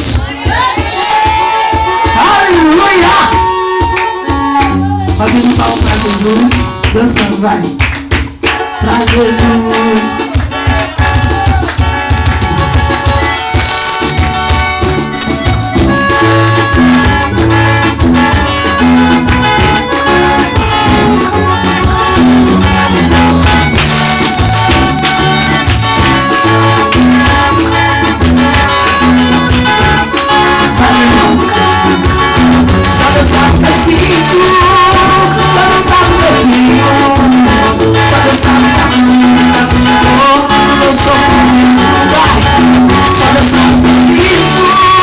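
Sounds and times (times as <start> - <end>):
gospel band playing: 0.0 - 45.0.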